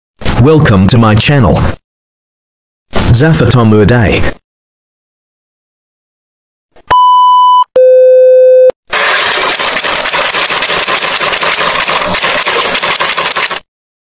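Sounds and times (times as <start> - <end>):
lower electronic beep: 6.9 - 8.8.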